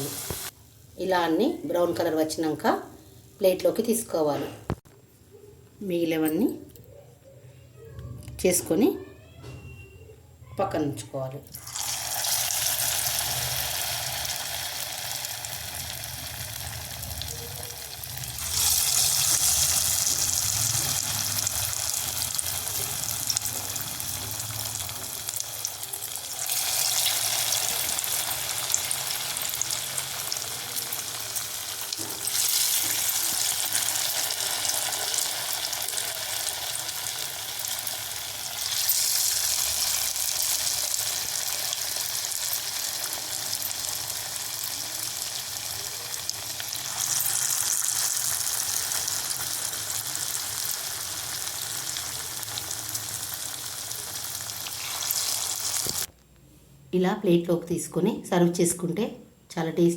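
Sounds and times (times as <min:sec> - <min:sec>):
hot oil sizzling: 0:00.0 - 0:03.4, 0:11.5 - 0:56.1.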